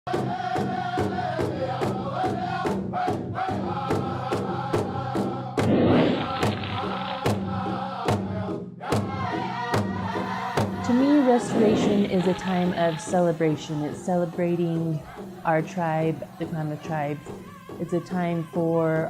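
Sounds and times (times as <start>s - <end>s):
group of singers chanting: 0.1s - 18.4s
drum beaten steadily: 5.6s - 19.0s.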